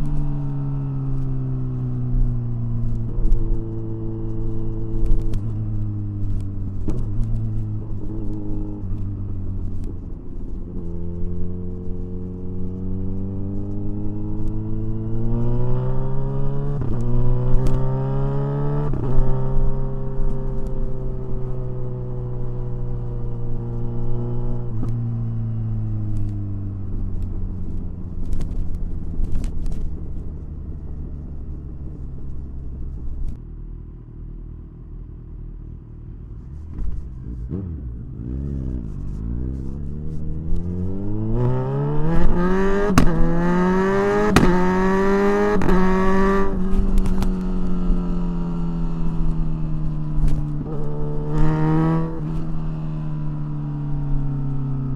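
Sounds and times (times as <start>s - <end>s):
motorcycle engine accelerating: 0.0s - 54.9s.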